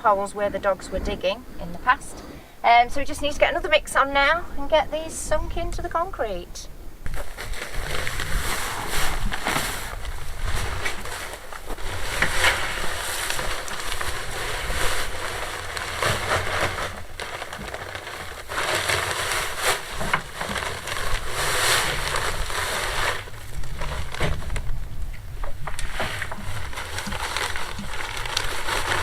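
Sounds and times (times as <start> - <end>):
concrete mixing scraping: 7.1 - 24.7, 25.5 - 29.0.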